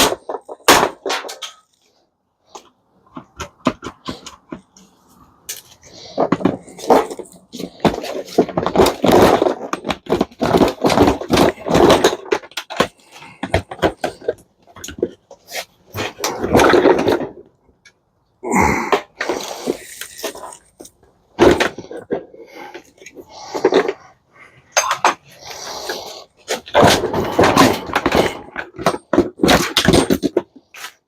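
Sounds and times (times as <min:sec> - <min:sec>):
dishwasher parts clattering: 0:00.0 - 0:01.8, 0:05.5 - 0:15.2, 0:15.9 - 0:17.5, 0:24.7 - 0:31.0.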